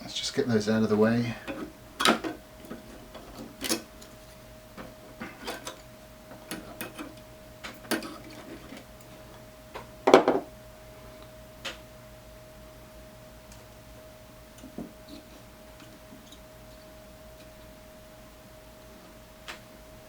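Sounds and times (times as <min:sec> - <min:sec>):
clicks and knocks of tools: 0:01.5 - 0:04.1, 0:04.8 - 0:08.9.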